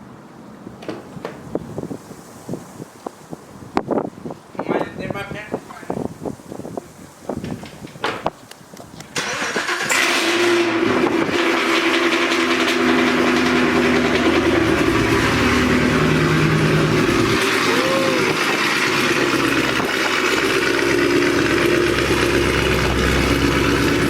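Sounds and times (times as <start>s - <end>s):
car engine starting and running: 9.1s - 24.0s.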